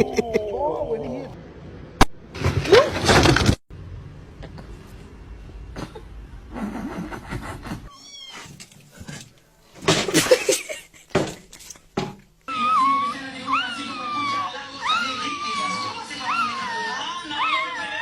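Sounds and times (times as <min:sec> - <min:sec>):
cat meowing: 0:07.9 - 0:08.6.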